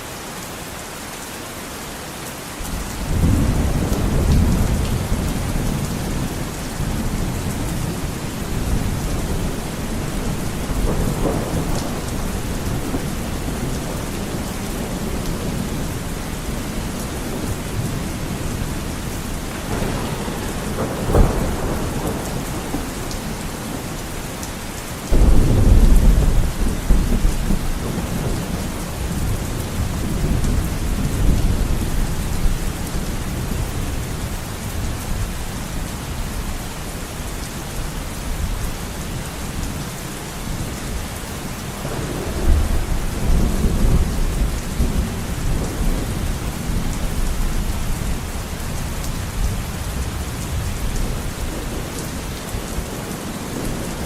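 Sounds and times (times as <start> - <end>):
heavy rain on a window: 0.0 - 54.0
thunder rumbling: 2.7 - 35.4, 41.7 - 54.0.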